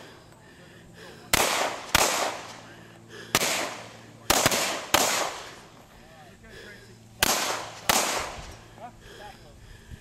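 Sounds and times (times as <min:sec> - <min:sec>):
handgun shots echoing: 0:01.3 - 0:02.5, 0:03.4 - 0:05.5, 0:07.2 - 0:08.4.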